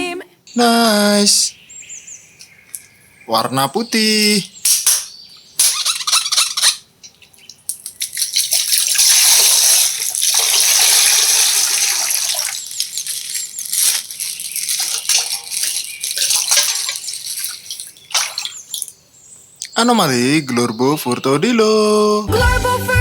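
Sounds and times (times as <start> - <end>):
water dripping: 2.4 - 3.0, 7.0 - 19.8
plastic crackling: 7.0 - 19.0
water pouring and splashing: 7.5 - 19.0.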